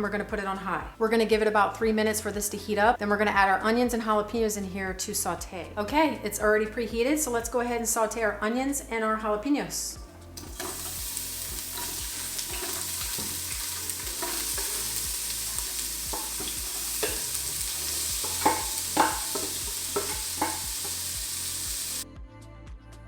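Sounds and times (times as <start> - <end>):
onions sizzling in oil: 10.4 - 22.0
utensil knocking against pot: 16.1 - 17.5, 18.2 - 21.0.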